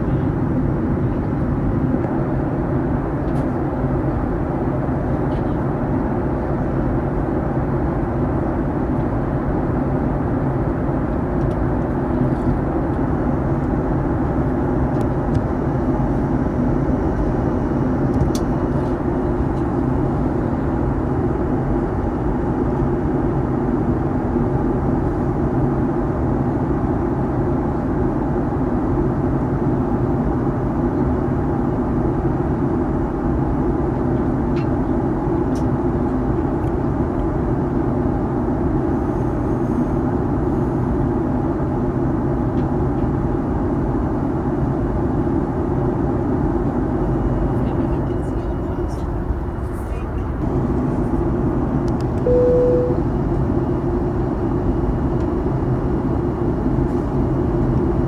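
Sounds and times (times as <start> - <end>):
aircraft engine drone: 48.5 - 58.0
low hum: 52.0 - 54.4.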